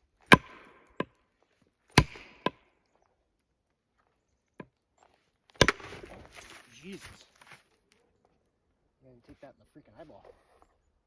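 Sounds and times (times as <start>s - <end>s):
hammer striking steel wedge: 0.2s - 1.2s, 2.0s - 2.6s, 5.6s - 6.1s.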